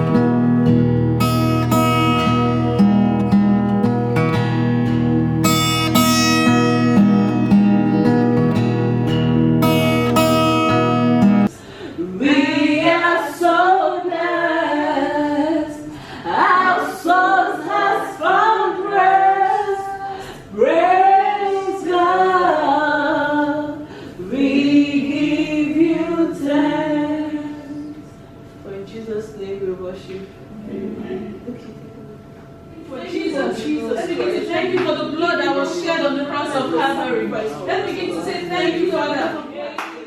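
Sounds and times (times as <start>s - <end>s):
guitar chords: 0.0s - 11.5s
woman singing: 12.0s - 28.0s.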